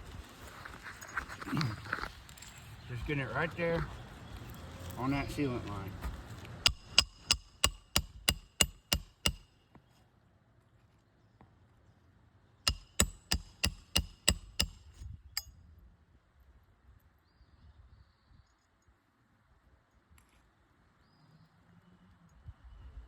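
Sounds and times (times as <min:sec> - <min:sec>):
hammer tapping metal: 0:06.7 - 0:09.5, 0:12.7 - 0:14.8.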